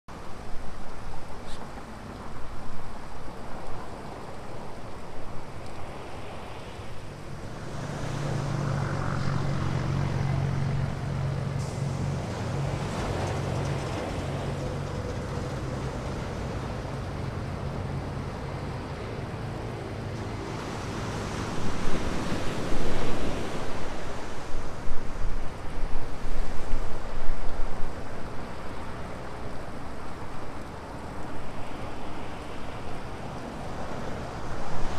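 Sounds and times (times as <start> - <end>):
vehicle engine humming: 7.1 - 22.2
surf breaking on beach: 20.1 - 28.1.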